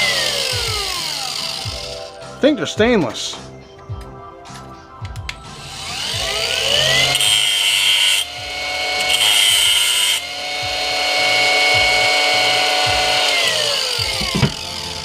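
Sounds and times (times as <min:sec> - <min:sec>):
electric grinder whining: 0:00.0 - 0:02.3, 0:05.4 - 0:15.0
screw grinding on wheel: 0:05.8 - 0:10.4.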